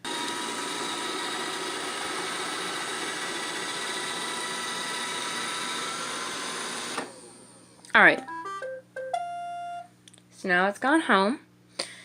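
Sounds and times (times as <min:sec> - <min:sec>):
robot vacuum whirring: 0:00.0 - 0:07.7.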